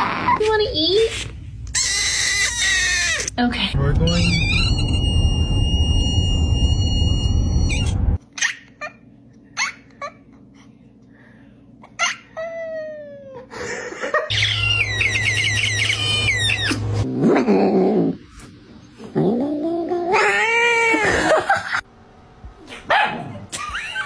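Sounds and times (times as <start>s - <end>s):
low hum: 3.6s - 8.2s
cat chirping: 14.3s - 16.8s.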